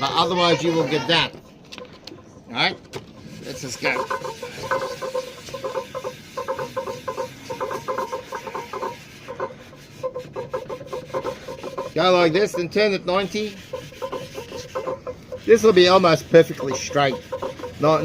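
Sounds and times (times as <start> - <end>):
metal rubbed on wet sandpaper: 3.2 - 18.0.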